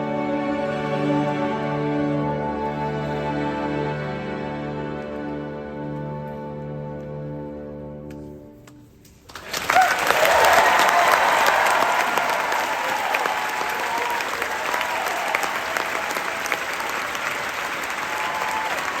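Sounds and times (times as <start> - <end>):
audience applause and cheering: 9.3 - 19.0.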